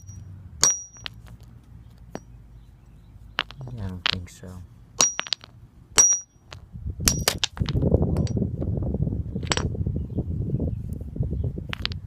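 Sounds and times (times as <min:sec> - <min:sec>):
hammer ringing on rock: 0:00.0 - 0:01.2, 0:05.0 - 0:07.4.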